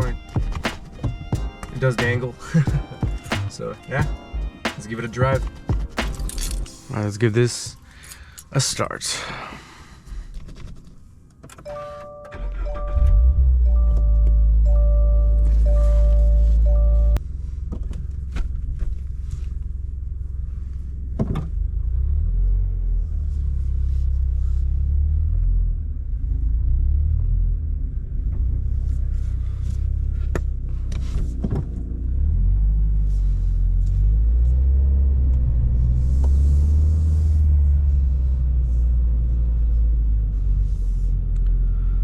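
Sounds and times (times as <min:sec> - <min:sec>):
car engine exhaust rumble: 0:12.4 - 0:42.0.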